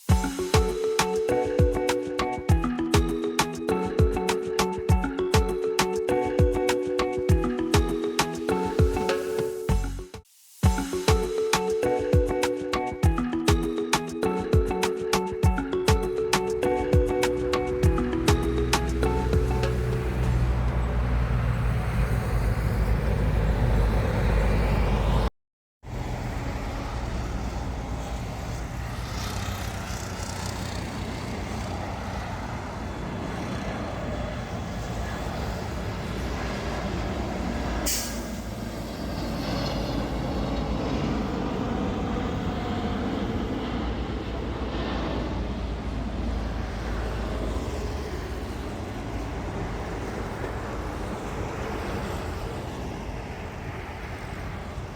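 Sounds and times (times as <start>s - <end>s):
aircraft engines rumbling: 25.9s - 54.9s.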